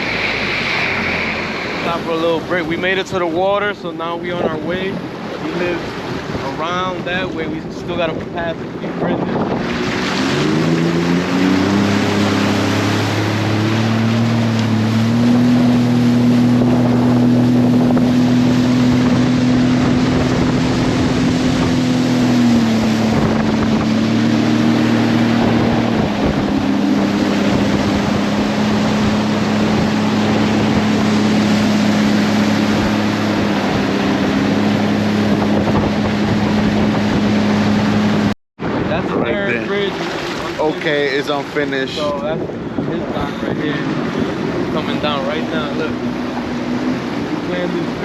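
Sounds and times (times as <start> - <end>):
jet ski engine running: 0.0 - 48.0
wind buffeting microphone: 0.0 - 48.0.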